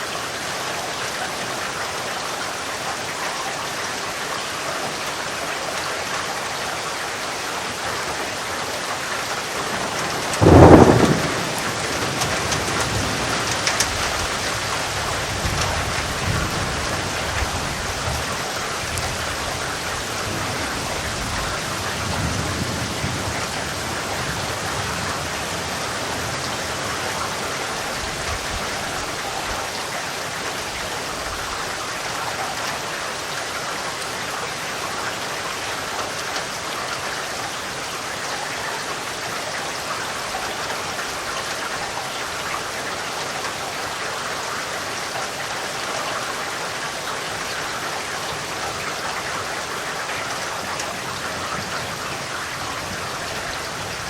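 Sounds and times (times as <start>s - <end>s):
heavy rain: 0.0s - 54.0s
loud thunderclap: 9.6s - 14.4s
low thunder rumbling: 9.6s - 29.1s.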